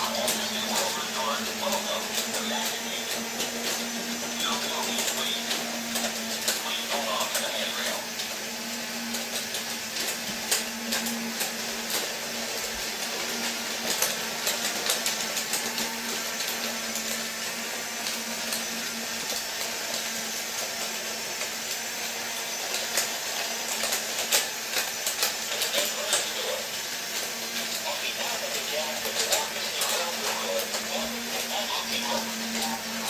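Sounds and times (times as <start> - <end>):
toy electric motors whirring: 0.0 - 33.0
light clicks of toy trains: 23.8 - 26.6, 27.2 - 31.1.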